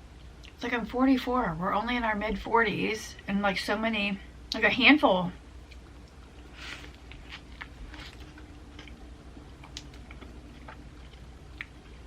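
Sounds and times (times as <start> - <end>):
low steady hum: 0.0 - 12.0
chewing with soft crunches: 0.1 - 0.6, 5.4 - 12.0.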